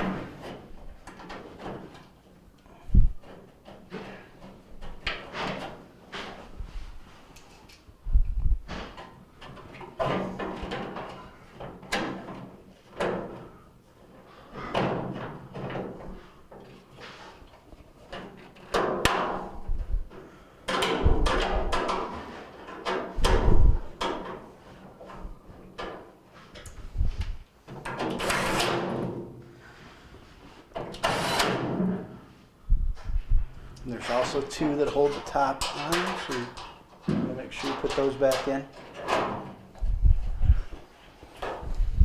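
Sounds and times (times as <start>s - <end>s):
sheet metal panels clunking: 34.0s - 39.7s.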